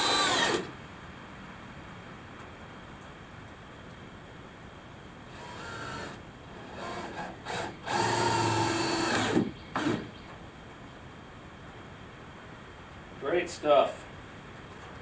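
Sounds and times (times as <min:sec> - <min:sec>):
cordless drill driving screws: 0:00.0 - 0:00.8, 0:05.3 - 0:10.2.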